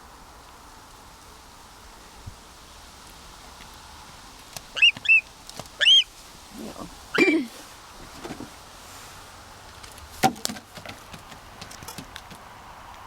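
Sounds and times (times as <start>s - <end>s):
steady background hiss: 0.0s - 13.0s
falcon calls: 4.7s - 7.5s.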